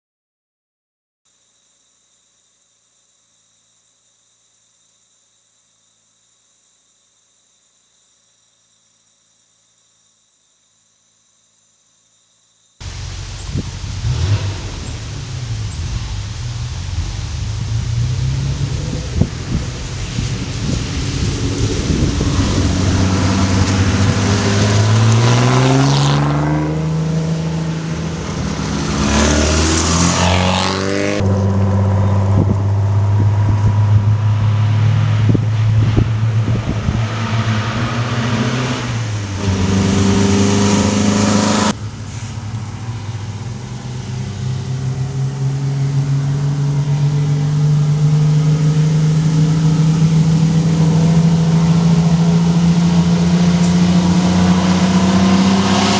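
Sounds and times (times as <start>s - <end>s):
car engine accelerating: 12.8s - 55.9s.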